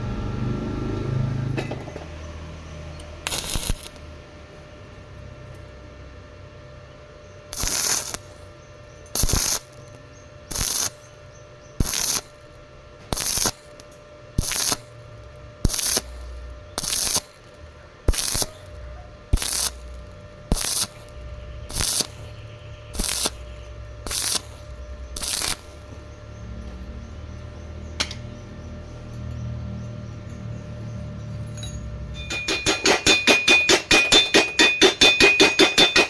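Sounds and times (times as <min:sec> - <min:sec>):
welding arc crackling: 0:03.0 - 0:04.2, 0:07.5 - 0:08.5, 0:09.1 - 0:27.1, 0:32.3 - 0:36.0.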